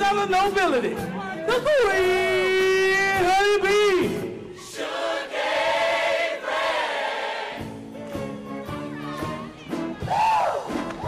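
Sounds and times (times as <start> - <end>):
choir singing held chord: 4.6 - 7.7.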